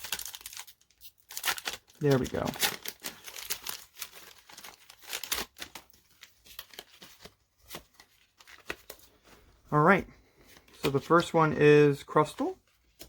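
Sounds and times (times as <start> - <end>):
foil wrapper crinkling and tearing: 0.0 - 9.1.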